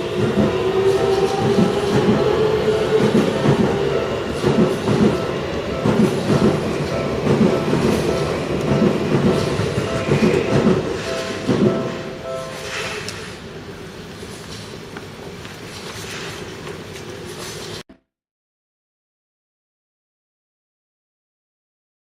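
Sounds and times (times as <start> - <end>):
level-crossing warning bell: 0.0 - 13.3
electric train passing: 0.0 - 17.8
train wheels clacking over rail joints: 0.2 - 12.0.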